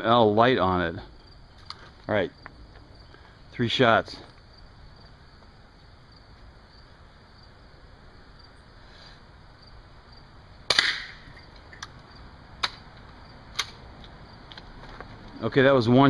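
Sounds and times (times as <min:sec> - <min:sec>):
rifle shot crack: 0:10.7 - 0:11.4.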